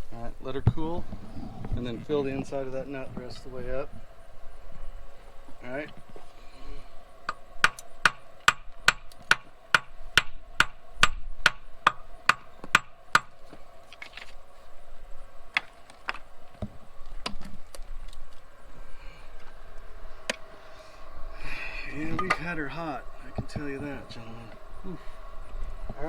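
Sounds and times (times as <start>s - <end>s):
hammer striking metal: 22.2s - 22.4s.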